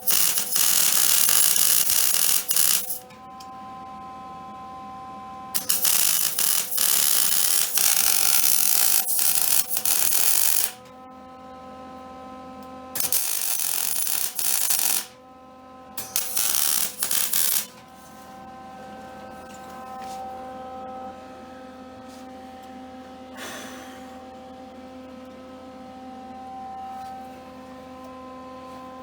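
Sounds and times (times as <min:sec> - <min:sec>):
arc welding crackling sizzle: 0:00.0 - 0:03.1, 0:05.6 - 0:10.8, 0:13.0 - 0:15.2, 0:16.0 - 0:17.8.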